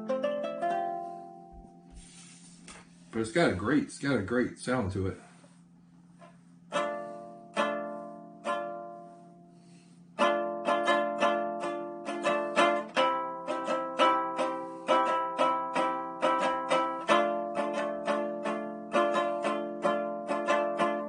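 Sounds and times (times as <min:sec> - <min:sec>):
lyre strummed: 0:06.2 - 0:21.0.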